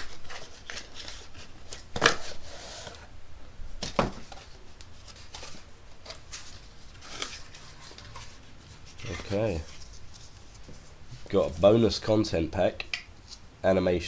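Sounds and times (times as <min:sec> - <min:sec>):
paper and plastic rustling: 0:00.0 - 0:03.0, 0:03.8 - 0:12.0.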